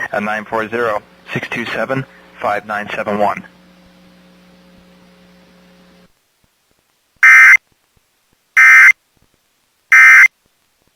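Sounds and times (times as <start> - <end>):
bursts of data tones: 7.2 - 7.6, 8.6 - 9.0, 9.9 - 10.3.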